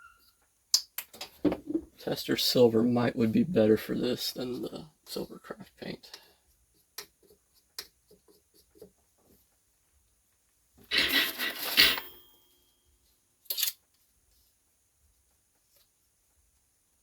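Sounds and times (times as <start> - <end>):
rustling scrape: 10.9 - 12.0.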